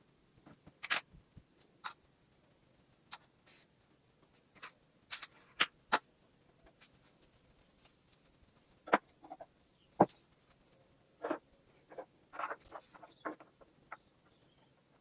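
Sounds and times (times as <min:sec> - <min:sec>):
plastic toy pieces clicking: 0:00.8 - 0:01.0.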